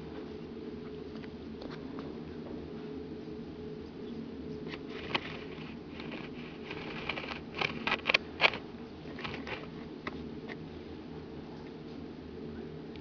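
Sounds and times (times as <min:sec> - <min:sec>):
puppy paws scratching and tapping: 0:04.6 - 0:10.6.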